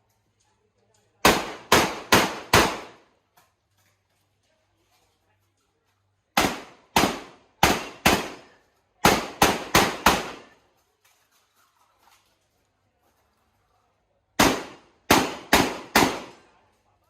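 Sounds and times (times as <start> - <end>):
shotgun shots: 1.2 - 3.0, 6.4 - 10.6, 14.4 - 16.5.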